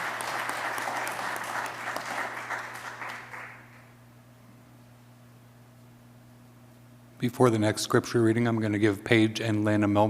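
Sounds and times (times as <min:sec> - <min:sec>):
congregation applauding: 0:00.0 - 0:03.9
faint low hum: 0:00.0 - 0:10.0.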